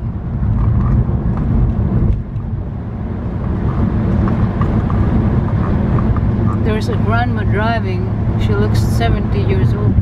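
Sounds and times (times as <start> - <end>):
car road and engine rumble: 0.0 - 10.0.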